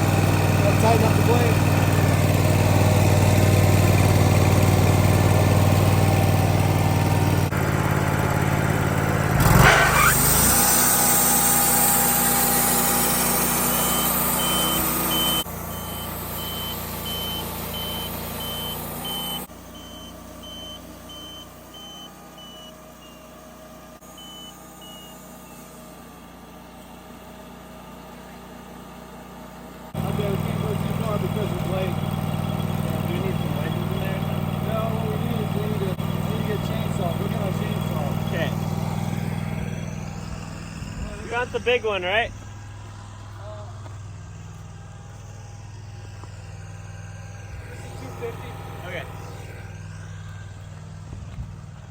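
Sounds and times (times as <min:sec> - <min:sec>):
sawmill engine running: 0:00.0 - 0:51.9
short high beeps: 0:13.7 - 0:23.2, 0:24.1 - 0:25.6.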